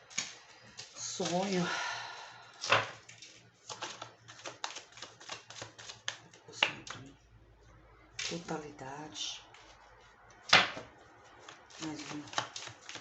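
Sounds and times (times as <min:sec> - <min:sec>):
cards being shuffled: 0:02.7 - 0:07.1, 0:09.5 - 0:13.0.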